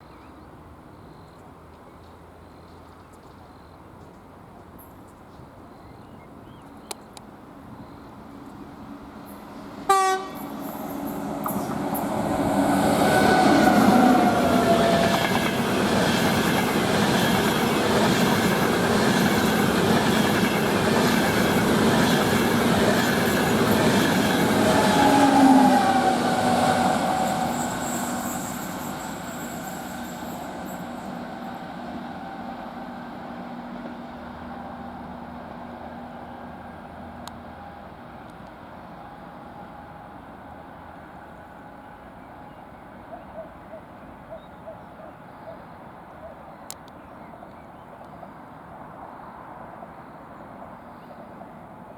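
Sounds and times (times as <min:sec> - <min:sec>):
train passing: 0:07.2 - 0:44.4, 0:47.7 - 0:51.9
train horn blast: 0:09.9 - 0:15.3, 0:24.4 - 0:31.7.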